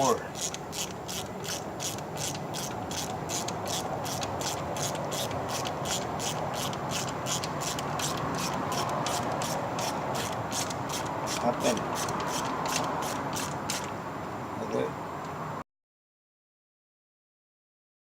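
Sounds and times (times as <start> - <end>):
ratchet wrench clicking: 0.0 - 14.0.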